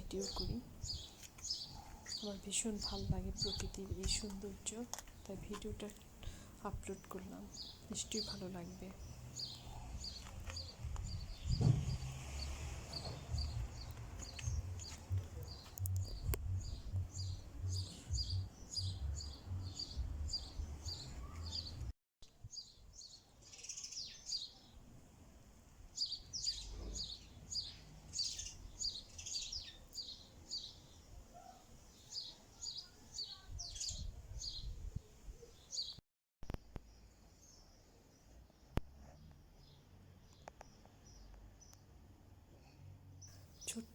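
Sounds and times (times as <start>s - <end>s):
songbird chirping: 0.0s - 21.9s, 22.5s - 24.9s, 26.0s - 42.1s, 43.2s - 43.9s
low rumble: 10.8s - 21.0s.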